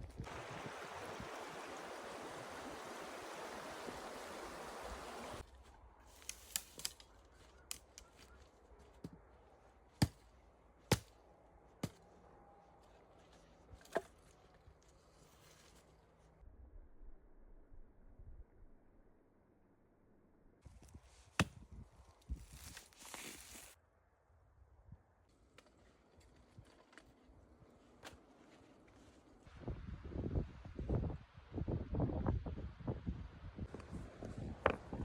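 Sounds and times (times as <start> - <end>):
water running steadily: 0.2 - 5.4.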